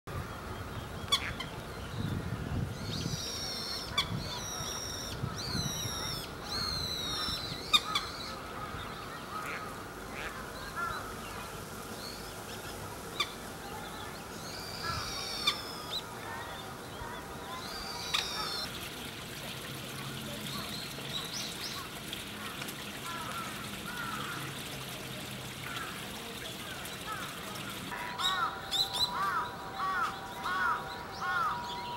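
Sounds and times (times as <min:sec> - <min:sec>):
birds calling high falling notes: 0:27.9 - 0:31.9.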